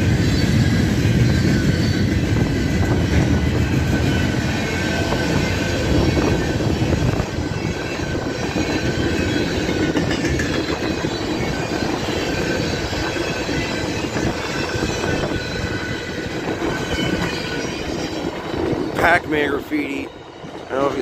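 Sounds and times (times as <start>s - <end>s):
train wheels rumbling on rails: 0.0s - 21.0s
faint high wheel squeal: 0.1s - 21.0s
wheels clacking over rail joints: 0.3s - 19.2s.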